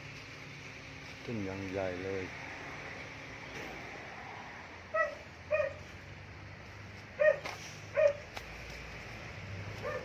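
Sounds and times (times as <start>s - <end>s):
dog barking: 4.9s - 5.9s, 7.2s - 8.2s, 9.8s - 10.0s.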